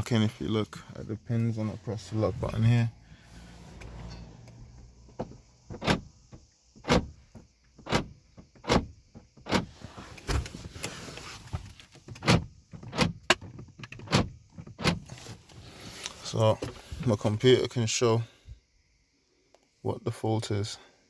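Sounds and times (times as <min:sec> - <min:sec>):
car door lock actuators clunking: 0:03.8 - 0:10.6, 0:12.0 - 0:15.1.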